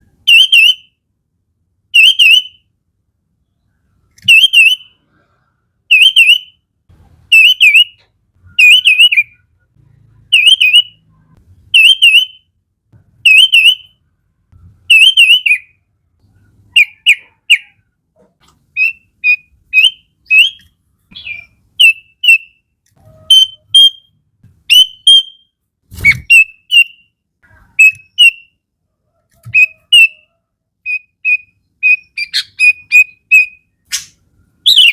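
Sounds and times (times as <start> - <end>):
bird whistling song: 0.3 - 0.9, 2.0 - 2.6, 3.4 - 5.0, 5.9 - 6.6, 7.3 - 9.6, 10.3 - 11.1, 11.7 - 12.5, 13.2 - 14.0, 14.8 - 15.8, 16.7 - 17.8, 18.7 - 27.1, 27.8 - 28.6, 29.4 - 34.9.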